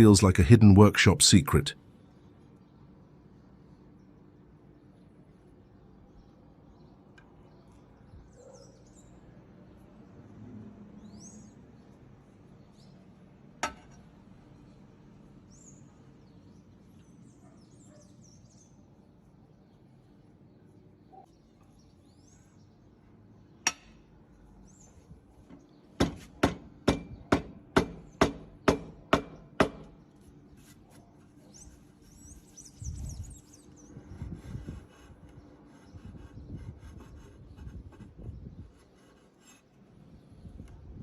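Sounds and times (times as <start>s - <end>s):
sharp knocks: 26.0s - 30.0s.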